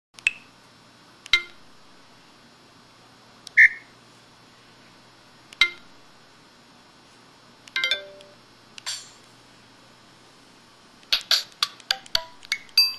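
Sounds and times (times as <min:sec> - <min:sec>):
bright ringing phone chime: 0:07.8 - 0:08.4.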